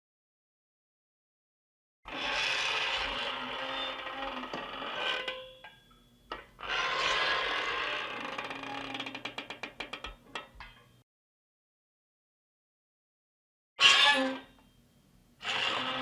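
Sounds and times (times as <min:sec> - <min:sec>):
screen door creaking: 0:02.1 - 0:05.3, 0:06.6 - 0:10.2, 0:15.4 - 0:16.0.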